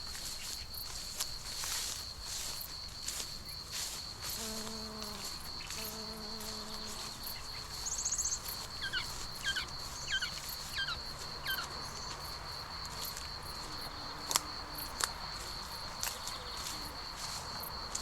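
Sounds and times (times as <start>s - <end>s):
bee buzzing: 4.2s - 7.9s
insect trilling: 4.4s - 11.7s.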